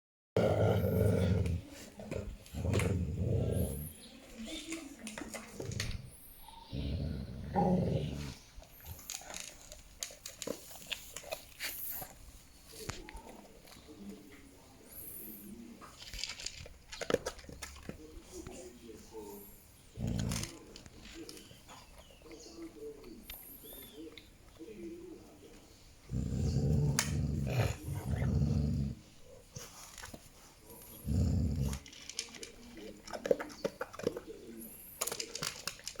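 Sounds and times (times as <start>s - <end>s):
dog vocalizing low: 0.4s - 4.0s, 26.1s - 29.0s.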